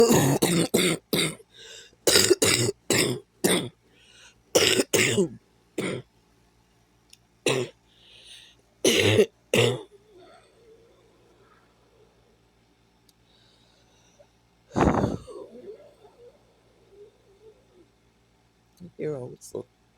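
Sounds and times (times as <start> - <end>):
person coughing: 0.0 - 1.4, 2.1 - 3.8, 4.6 - 6.0, 7.5 - 7.8, 8.8 - 10.4, 14.8 - 15.6
faint breaths: 1.5 - 2.0, 3.8 - 4.5, 7.8 - 8.7, 9.9 - 18.2.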